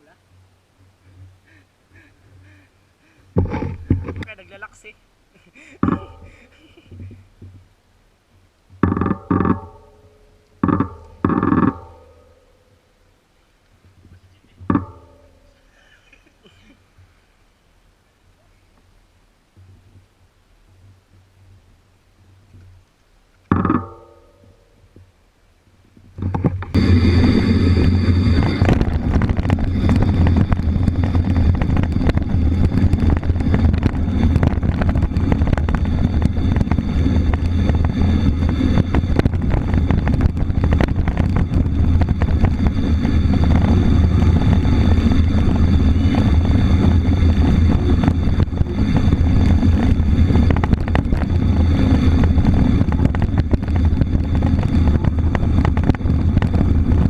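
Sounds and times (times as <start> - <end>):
mountain bike rumbling on rough trail: 1.0 - 4.5, 26.0 - 57.0
wind buffeting microphone: 25.8 - 57.0.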